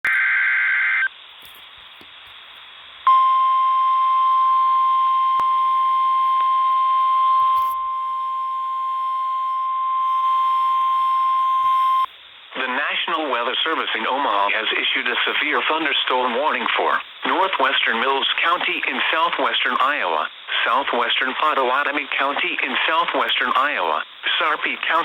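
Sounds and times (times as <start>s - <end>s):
steady warning alarm tone: 3.1s - 12.1s.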